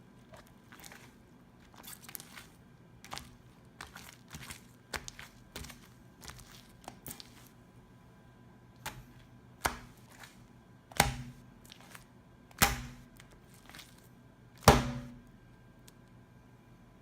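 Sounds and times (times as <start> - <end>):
fist slapping wet slime: 10.9 - 13.0.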